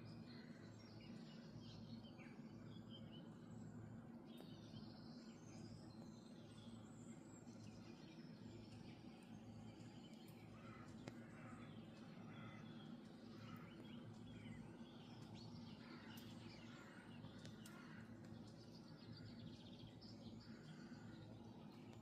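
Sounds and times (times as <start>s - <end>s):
low background hum: 0.0s - 22.0s
birds chirping: 9.2s - 22.0s.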